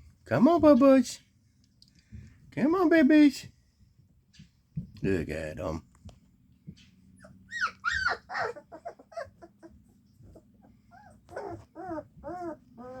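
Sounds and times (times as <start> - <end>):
puppies whimpering and squeaking: 7.1 - 13.0.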